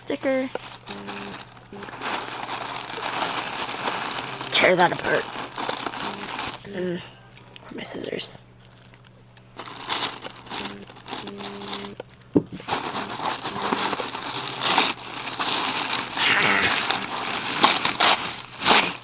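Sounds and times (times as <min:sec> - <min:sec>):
paper and plastic packaging crinkling: 0:00.1 - 0:06.9, 0:08.6 - 0:19.0.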